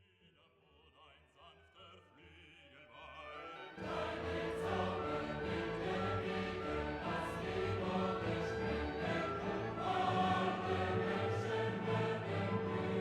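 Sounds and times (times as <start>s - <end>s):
choir background music: 2.7s - 13.0s.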